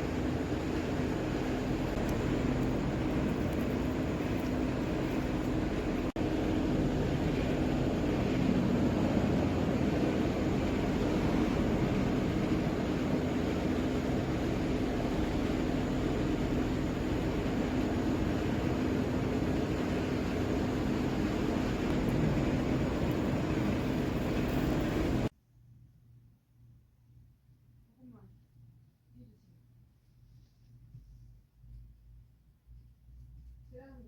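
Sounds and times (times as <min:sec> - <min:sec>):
low hum: 0:00.0 - 0:25.3
rumbling background noise: 0:00.0 - 0:25.3.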